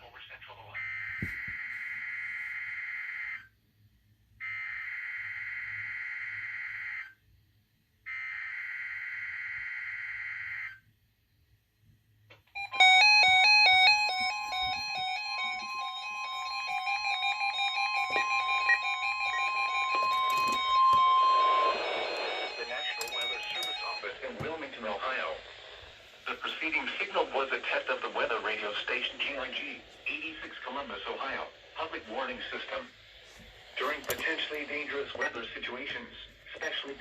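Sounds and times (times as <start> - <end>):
steady warning alarm tone: 0.8 - 3.5, 4.4 - 7.2, 8.1 - 10.8, 12.6 - 25.6
alert receivers beeping: 12.6 - 24.2.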